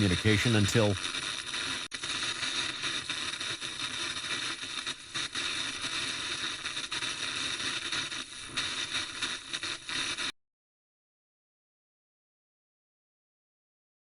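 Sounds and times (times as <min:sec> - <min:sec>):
broadcast static hiss: 0:00.0 - 0:10.3.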